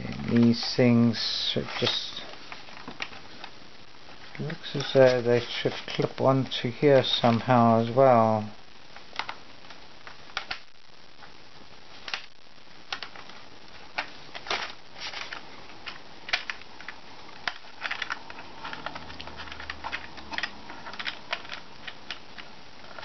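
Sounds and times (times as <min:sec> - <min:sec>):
faint low hum: 0:00.0 - 0:23.0
small plastic parts clicking: 0:12.9 - 0:23.0.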